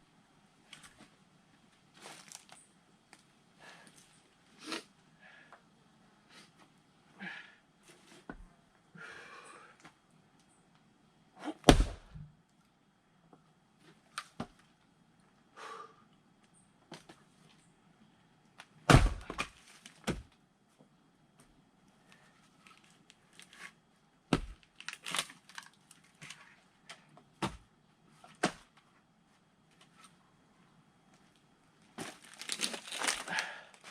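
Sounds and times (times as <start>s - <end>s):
firewood splitting strikes: 11.6s - 12.2s, 18.9s - 20.3s, 24.3s - 25.7s, 27.4s - 27.7s.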